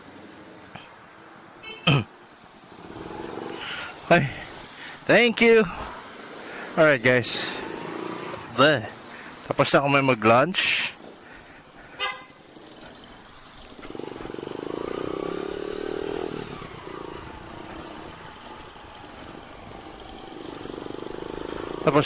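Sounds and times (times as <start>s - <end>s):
motorcycle engine passing by: 2.7s - 4.0s, 7.2s - 8.6s, 12.4s - 22.0s
horn toot: 12.0s - 12.4s.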